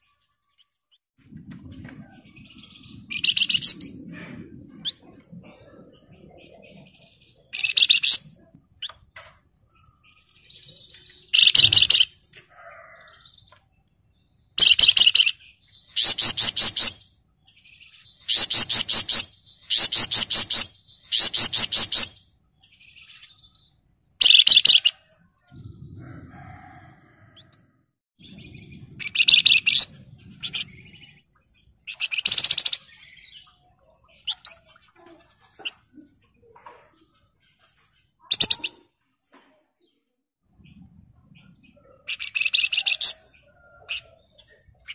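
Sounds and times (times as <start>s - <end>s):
songbird chattering trills: 9.8s - 12.2s, 38.2s - 38.8s.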